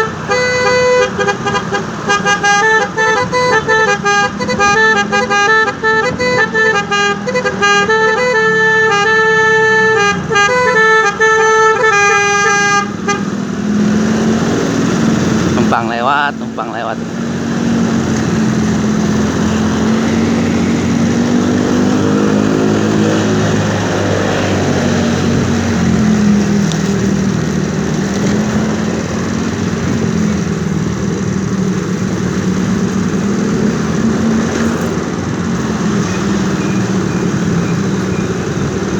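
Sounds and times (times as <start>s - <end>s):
vehicle engine running: 12.7s - 38.9s.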